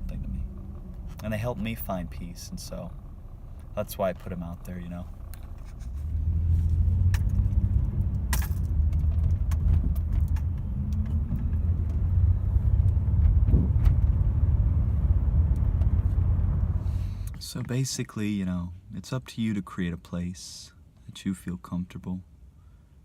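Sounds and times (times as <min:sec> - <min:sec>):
car interior rumble: 0:00.0 - 0:17.9.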